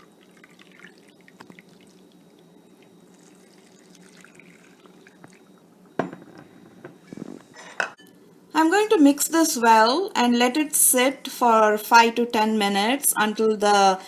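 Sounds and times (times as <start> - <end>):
hot water pouring into a bowl: 0.0 - 5.6
water trickling and dripping: 0.0 - 5.6.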